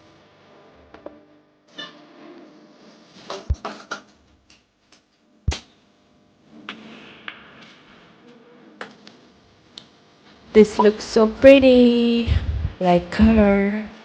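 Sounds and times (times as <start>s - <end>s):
heavy thumps: 11.4s - 13.6s.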